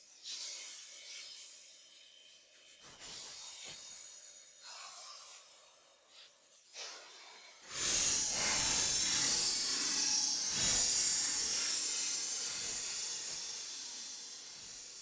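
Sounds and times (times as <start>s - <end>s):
synthesized hissing swells: 7.7s - 15.0s
loud steady hiss: 8.2s - 15.0s.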